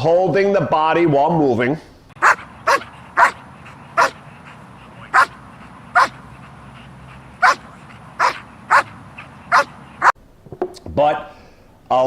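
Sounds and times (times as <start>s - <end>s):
large dog barking: 2.2s - 10.1s.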